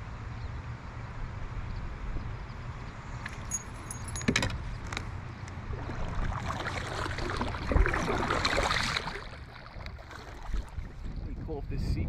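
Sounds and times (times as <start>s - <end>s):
water splashing around kayak: 5.6s - 11.6s.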